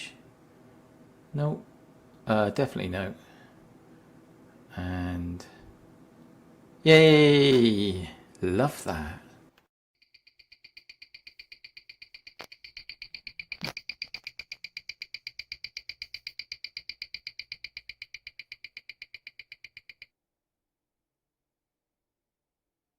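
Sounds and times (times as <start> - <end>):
mechanical watch ticking: 10.0 - 20.2.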